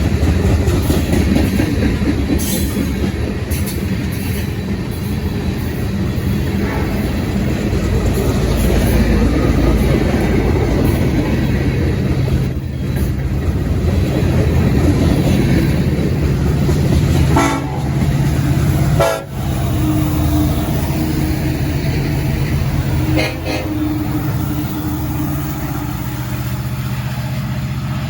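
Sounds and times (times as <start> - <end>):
diesel locomotive engine rumble: 0.0 - 28.0
train horn toots: 6.6 - 7.3, 17.2 - 18.1, 18.9 - 21.3, 22.8 - 25.3.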